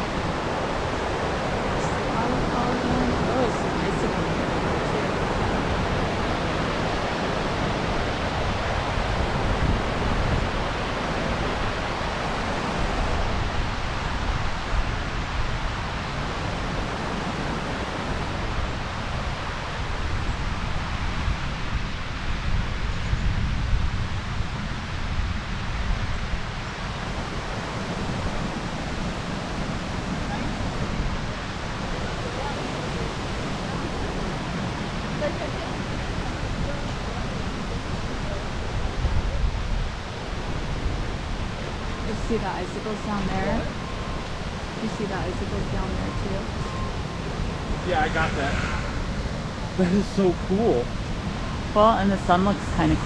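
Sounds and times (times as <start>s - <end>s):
waterfall rushing: 0.0s - 21.0s, 26.5s - 53.0s
wind rumbling on microphone: 0.0s - 53.0s.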